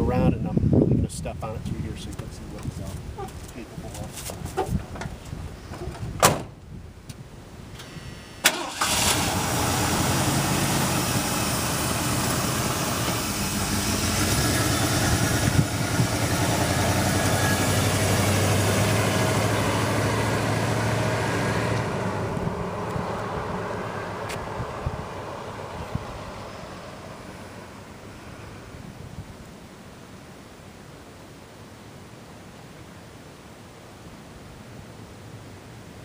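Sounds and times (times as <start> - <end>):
truck engine revving hard: 8.5 - 26.6.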